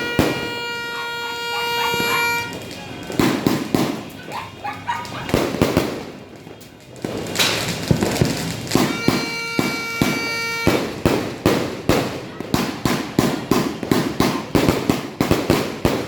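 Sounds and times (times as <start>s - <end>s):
steady horn: 0.0s - 2.6s, 8.8s - 11.0s
firework crackling burst: 0.0s - 4.4s, 5.0s - 16.0s
firework bangs: 0.0s - 16.0s.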